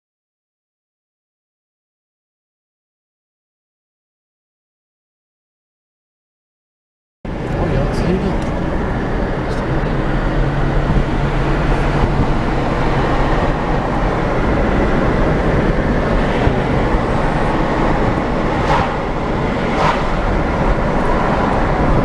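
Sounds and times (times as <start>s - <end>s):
vehicle rumble: 7.3s - 22.0s.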